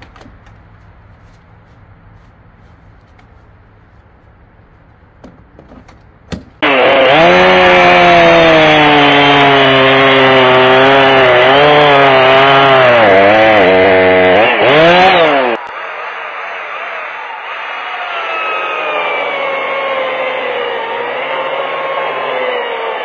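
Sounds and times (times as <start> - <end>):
chainsaw cutting log: 6.3 - 16.5, 17.4 - 23.0.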